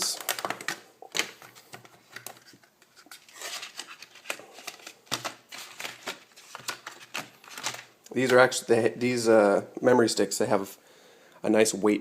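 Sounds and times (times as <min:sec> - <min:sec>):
plastic parts clicking and rustling: 0:00.0 - 0:08.4.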